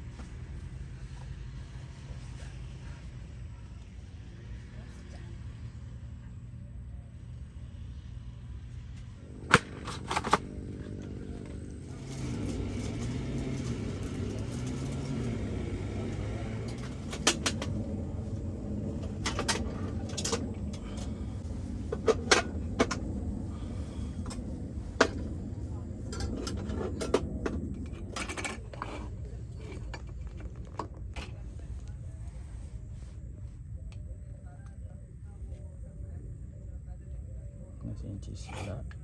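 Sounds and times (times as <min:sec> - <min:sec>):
vehicle engine running: 0:00.0 - 0:39.0
sharp clicks and knocks: 0:16.6 - 0:17.8.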